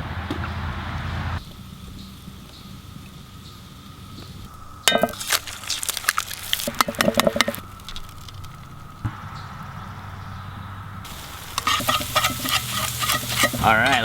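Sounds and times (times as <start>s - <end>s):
cookware clinking and clattering: 6.7s - 7.6s, 11.1s - 14.0s.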